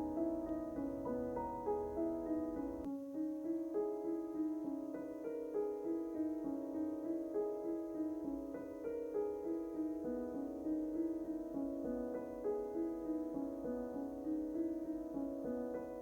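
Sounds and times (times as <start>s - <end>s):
low rumble: 0.0s - 2.9s
piano melody: 0.0s - 16.0s.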